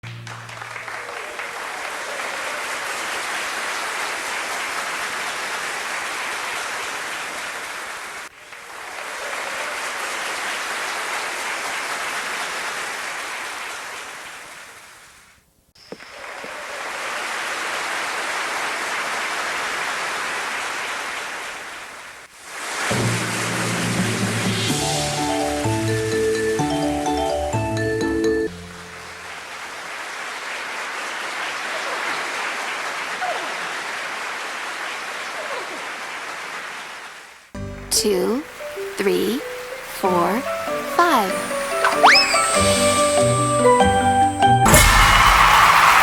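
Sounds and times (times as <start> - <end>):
audience applauding: 0.0 - 14.0, 28.9 - 37.0, 44.6 - 46.0.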